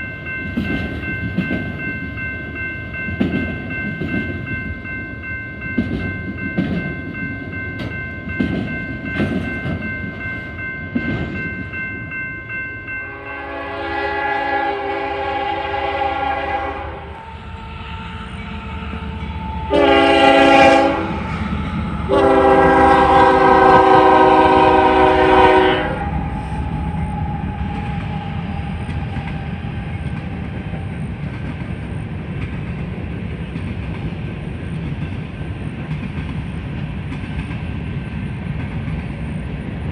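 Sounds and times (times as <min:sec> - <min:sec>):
repeated bell ringing: 0:00.0 - 0:13.4
train rumble: 0:00.0 - 0:39.9
locomotive air horn blasts: 0:13.1 - 0:18.8, 0:19.4 - 0:26.6.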